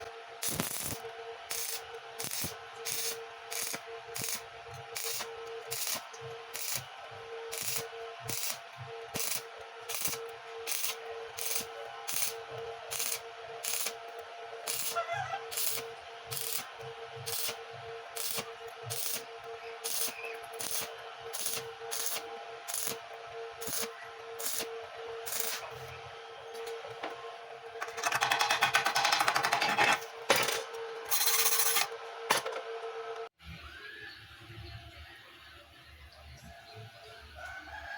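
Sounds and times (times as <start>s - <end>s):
welding arc sizzling in pulses: 0.0s - 14.0s, 14.6s - 26.0s.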